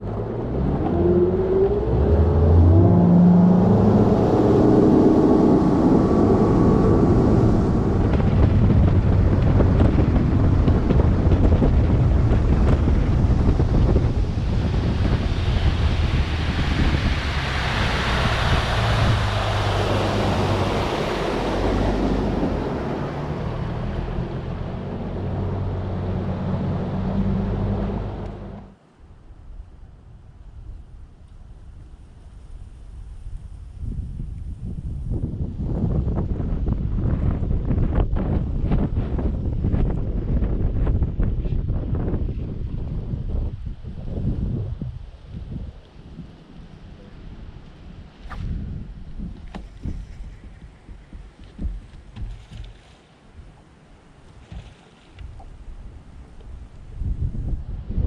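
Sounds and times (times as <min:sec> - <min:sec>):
engine running: 0:00.0 - 0:28.8
wind noise on microphone: 0:00.0 - 0:58.0.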